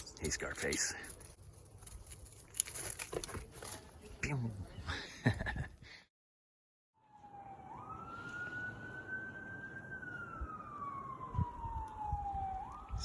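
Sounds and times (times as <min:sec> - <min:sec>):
emergency siren wailing: 0:07.0 - 0:13.0.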